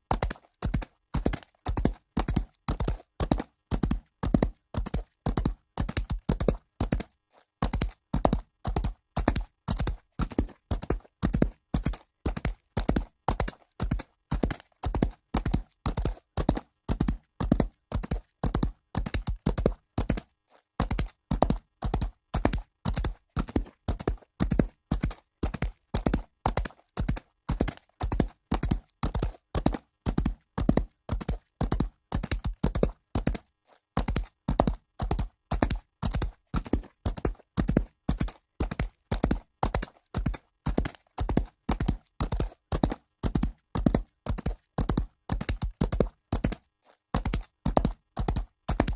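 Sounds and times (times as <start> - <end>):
horse hooves galloping on dirt: 0.0 - 48.9.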